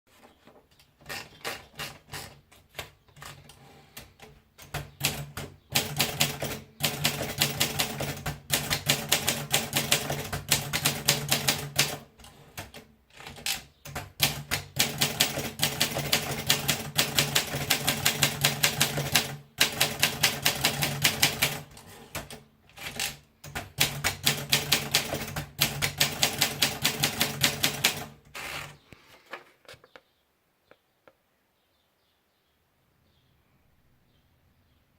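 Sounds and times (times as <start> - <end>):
typewriter keys striking: 4.6 - 28.7.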